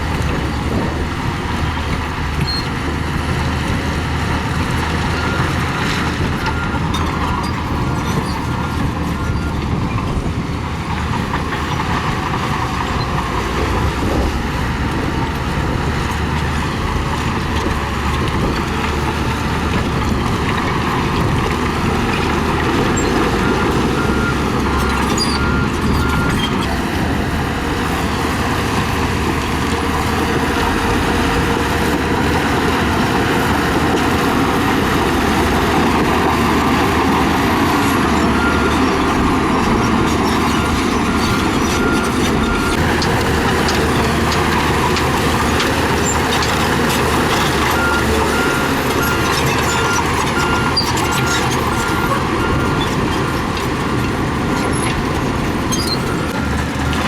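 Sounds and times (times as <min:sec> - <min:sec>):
bulldozer diesel engine running: 0:00.0 - 0:57.0
reversing alarm beeping: 0:22.7 - 0:26.7, 0:37.1 - 0:44.0, 0:47.4 - 0:52.8.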